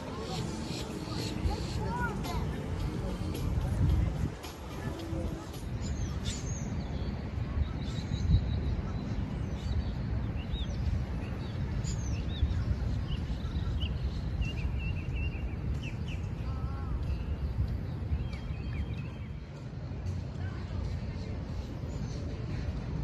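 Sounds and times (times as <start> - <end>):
small birds chirping: 0.0 - 22.9
steady low rumble: 0.0 - 23.0.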